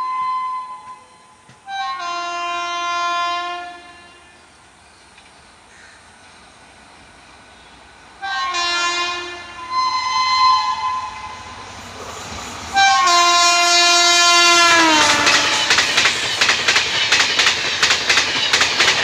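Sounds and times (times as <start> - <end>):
locomotive multi-tone horn: 0.0 - 4.4, 8.2 - 11.8, 12.7 - 16.1.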